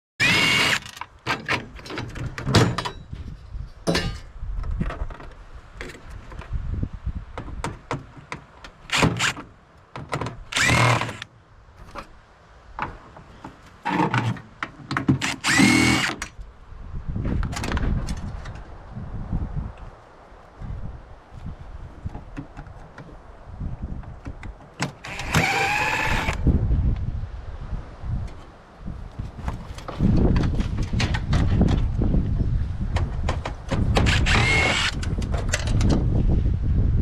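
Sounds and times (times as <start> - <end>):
power drill whining: 0.2 - 1.0, 10.5 - 11.2, 15.2 - 16.2, 25.0 - 26.4, 34.1 - 35.0
parts knocking and clattering: 0.3 - 3.2, 3.8 - 6.5, 7.4 - 11.2, 12.8 - 16.3.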